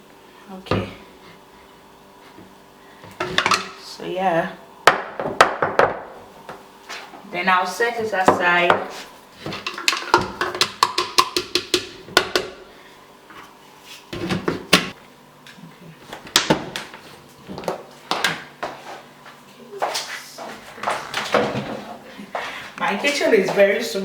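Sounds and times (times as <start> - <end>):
kitchen containers being handled: 3.1 - 3.9, 8.0 - 12.6.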